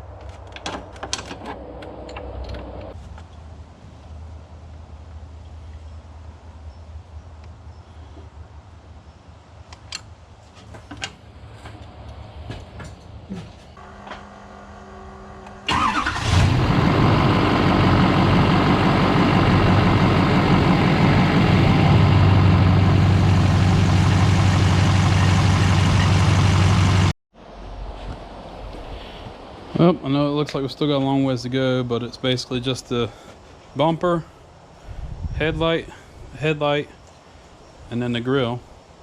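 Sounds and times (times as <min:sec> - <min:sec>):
diesel engine cranking: 0:13.8 - 0:27.1
diesel engine idling: 0:13.8 - 0:27.2.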